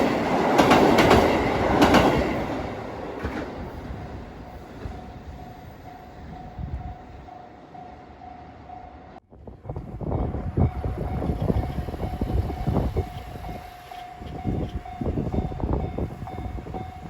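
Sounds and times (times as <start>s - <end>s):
level crossing warning bell: 5.0s - 9.2s, 10.2s - 17.0s.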